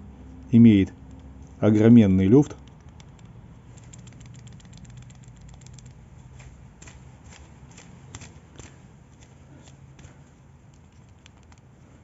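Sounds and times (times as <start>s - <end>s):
pulley clicking and knocking: 2.6s - 6.1s.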